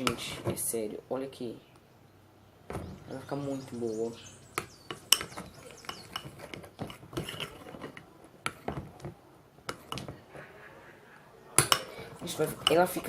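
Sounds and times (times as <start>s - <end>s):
utensil scraping a bowl: 4.9s - 8.8s, 11.7s - 13.0s.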